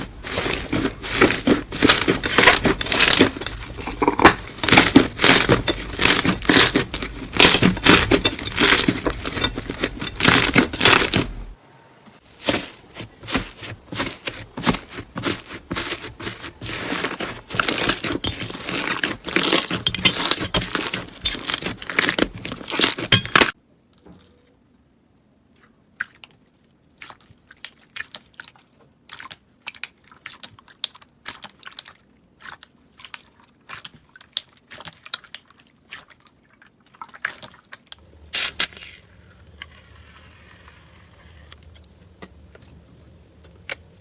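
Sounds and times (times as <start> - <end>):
crunchy slime crackling: 0.0 - 11.6, 12.2 - 23.6.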